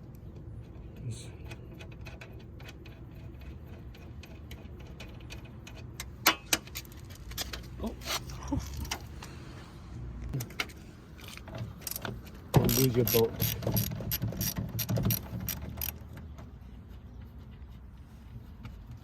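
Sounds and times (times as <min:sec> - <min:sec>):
socket ratchet clicking: 0:12.6 - 0:16.0.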